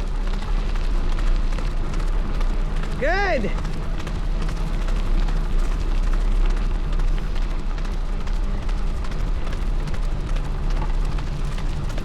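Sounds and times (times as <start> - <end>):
bike rolling on dirt trail: 0.0 - 12.0.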